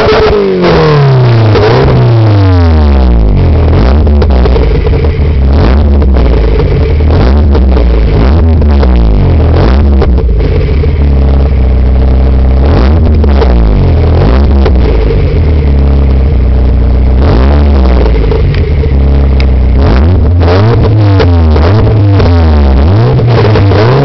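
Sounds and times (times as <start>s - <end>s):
car engine revving hard: 0.0s - 24.0s.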